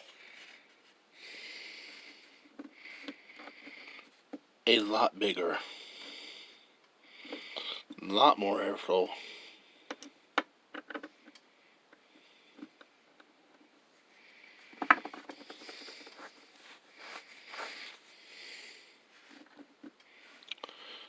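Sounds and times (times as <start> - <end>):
soft rustling: 13.5 - 20.5.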